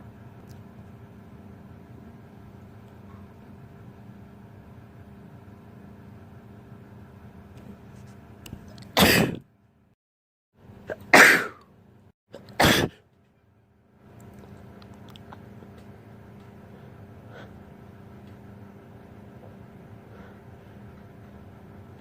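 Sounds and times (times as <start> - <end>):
low room hum: 0.0 - 10.0, 10.6 - 22.0
person sneezing: 9.0 - 9.4, 10.9 - 11.6, 12.4 - 13.0.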